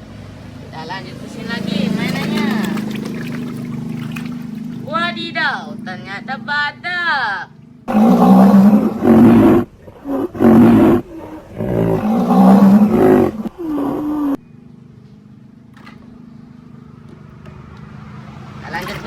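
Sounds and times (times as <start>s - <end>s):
deep animal roars: 7.9s - 14.4s.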